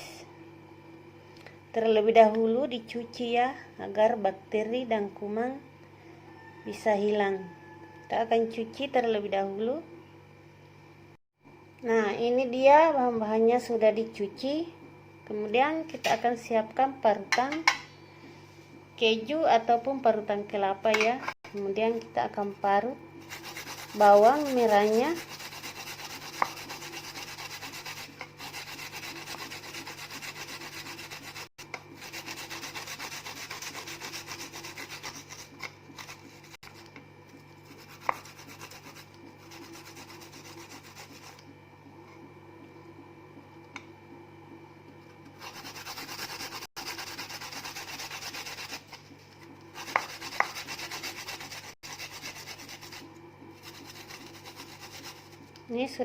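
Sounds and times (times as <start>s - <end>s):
grating on a hand grater: 23.2s - 36.9s, 37.6s - 41.4s, 45.4s - 49.0s, 49.8s - 55.4s.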